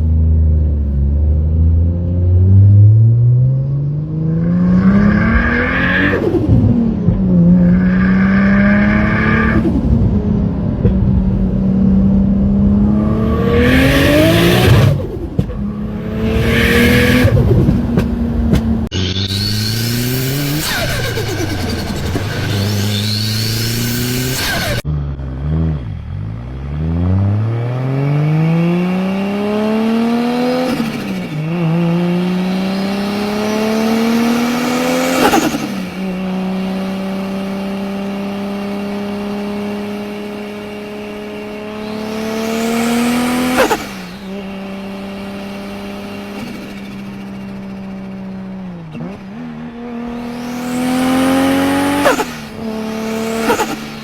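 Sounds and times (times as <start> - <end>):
turbocharged car engine revving: 1.1 - 54.0
engine running steadily: 9.4 - 24.8.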